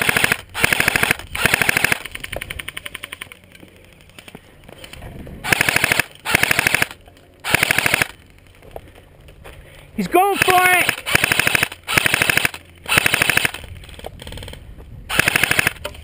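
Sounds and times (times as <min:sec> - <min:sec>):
airsoft gun firing bursts: 0:00.0 - 0:03.2, 0:05.4 - 0:08.2, 0:10.2 - 0:13.6, 0:15.1 - 0:15.8.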